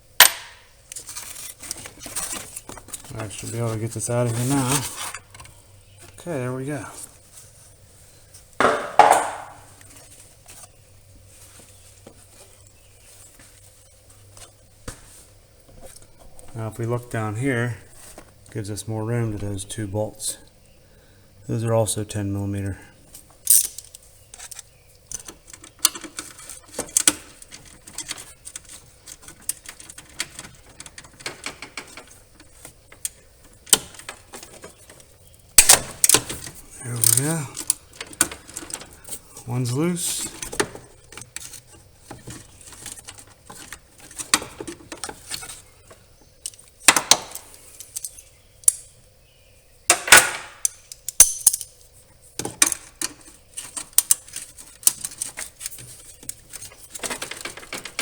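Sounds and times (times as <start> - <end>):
plastic tray scraping knocks: 8.6 - 9.7.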